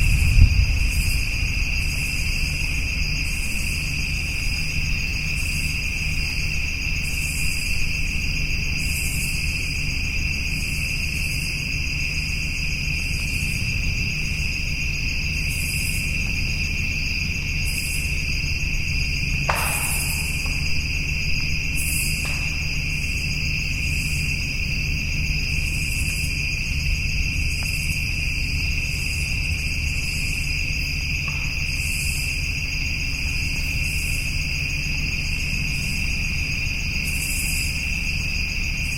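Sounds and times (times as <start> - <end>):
low steady rumble: 0.0 - 6.8
insects trilling: 0.0 - 38.9
pulsed insect calls: 0.0 - 38.9.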